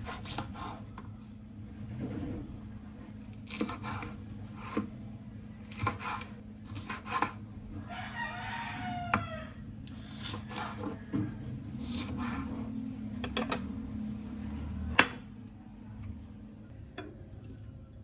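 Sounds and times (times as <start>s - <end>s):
rooster crowing: 7.8s - 11.9s.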